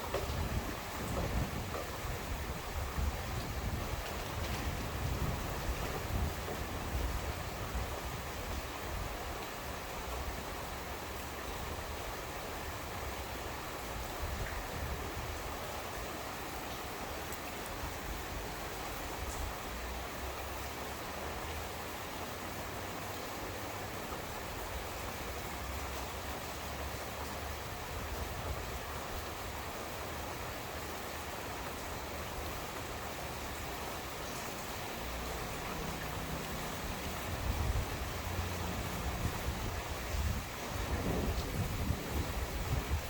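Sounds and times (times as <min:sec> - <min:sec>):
steady rain falling: 0:00.0 - 0:43.0
thunder rumbling: 0:37.3 - 0:43.0.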